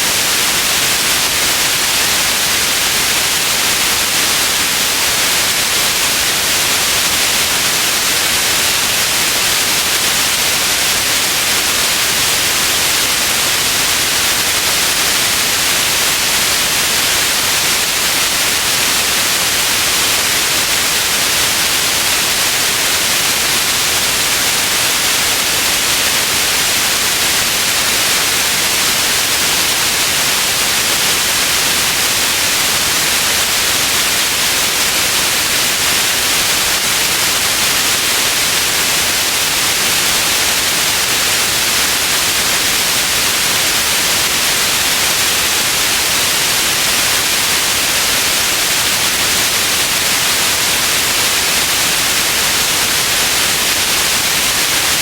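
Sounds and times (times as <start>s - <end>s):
white noise hiss: 0.0s - 55.0s.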